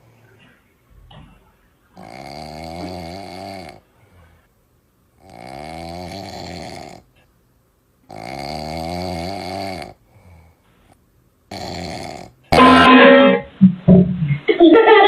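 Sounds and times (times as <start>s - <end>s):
man snoring: 2.0s - 3.8s, 5.2s - 7.1s, 8.1s - 10.5s, 11.5s - 12.9s
loud burst of music: 12.6s - 13.5s.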